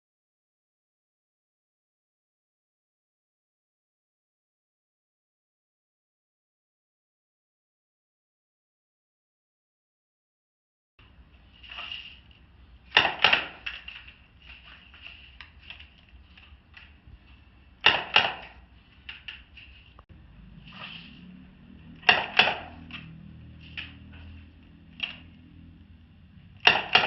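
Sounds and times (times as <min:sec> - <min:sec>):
revolver shots: 0:12.9 - 0:13.8, 0:17.8 - 0:18.7, 0:22.0 - 0:22.9, 0:26.6 - 0:27.0.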